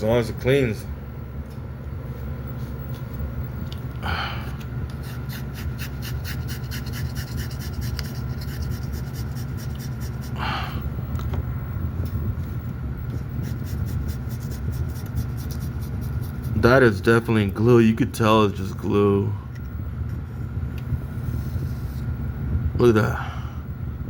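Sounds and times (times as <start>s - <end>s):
person breathing out: 4.0s - 4.6s, 10.3s - 11.0s, 23.1s - 23.7s
razor blade scraping glue: 5.0s - 10.3s.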